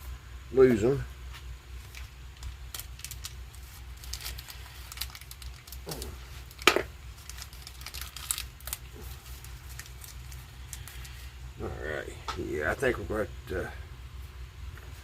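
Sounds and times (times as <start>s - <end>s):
hardware packet rustling: 1.7s - 11.4s
small metal parts clicking: 4.0s - 8.8s.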